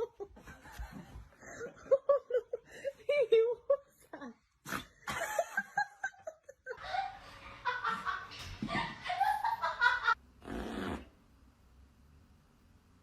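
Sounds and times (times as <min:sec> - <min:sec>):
people laughing: 0:05.1 - 0:10.2.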